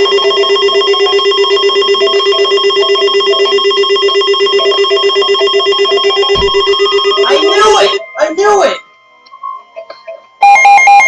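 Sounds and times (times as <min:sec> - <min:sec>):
electronic alert tone trilling: 0:00.0 - 0:08.8
low thud: 0:06.3 - 0:06.8.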